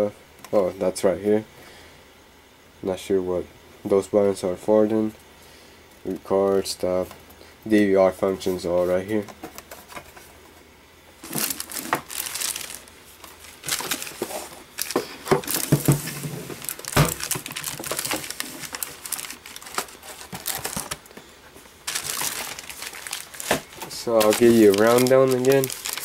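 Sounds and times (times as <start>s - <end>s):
packaging crinkling and rustling: 11.2s - 26.0s.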